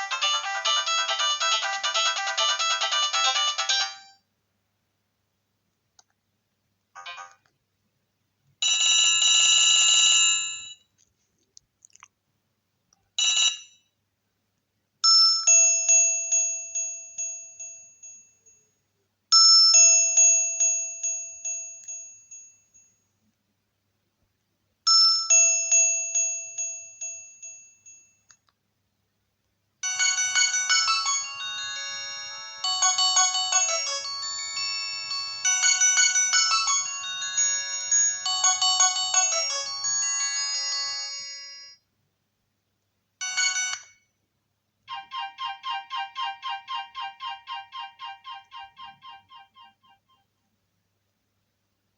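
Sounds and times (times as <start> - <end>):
bell-like phone chime: 0.0 - 4.2, 7.0 - 7.4, 8.6 - 10.9, 13.2 - 13.9, 29.8 - 41.8, 43.2 - 44.0, 44.9 - 50.2
electronic keyboard ringtone tune: 0.0 - 4.2, 29.8 - 41.8, 43.2 - 44.0, 44.9 - 50.2.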